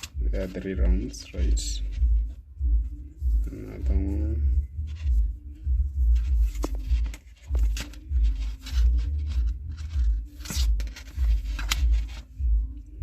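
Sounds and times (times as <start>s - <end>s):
cord rustling and scraping: 0.0s - 13.0s
low repeated thudding: 0.2s - 8.3s.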